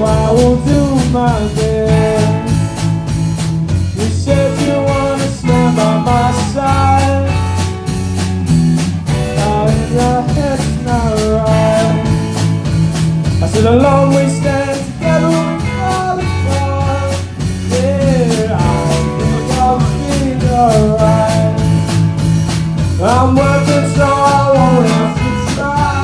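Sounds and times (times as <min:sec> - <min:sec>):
person singing: 0:00.0 - 0:02.6, 0:04.0 - 0:07.6, 0:09.2 - 0:12.2, 0:13.4 - 0:21.9, 0:23.0 - 0:26.0
bass guitar: 0:00.0 - 0:26.0
drum kit beat: 0:00.0 - 0:26.0
electric guitar: 0:00.0 - 0:26.0.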